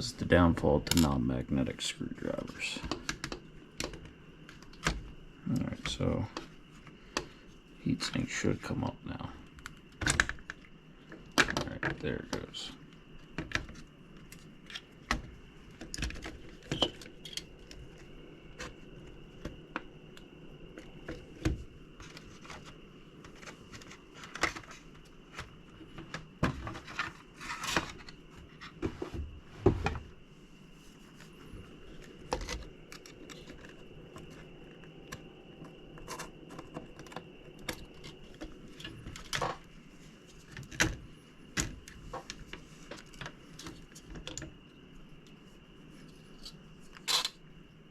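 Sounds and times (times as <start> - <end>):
metal parts clicking and clinking: 47.1 - 47.4.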